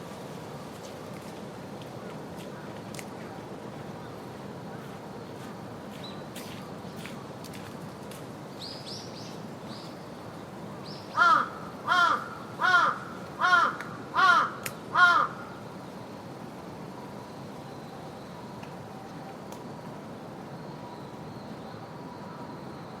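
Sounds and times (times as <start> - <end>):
park ambience hum: 0.0 - 23.0
raven cawing: 11.1 - 15.6.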